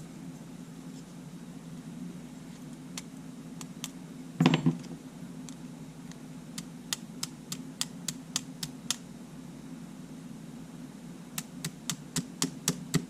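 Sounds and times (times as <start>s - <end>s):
steady low hum: 0.0s - 13.0s
parts clattering: 4.4s - 5.0s.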